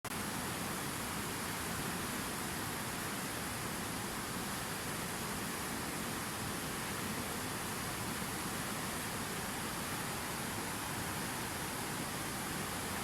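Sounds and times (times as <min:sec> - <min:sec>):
waterfall rushing: 0:00.2 - 0:13.0.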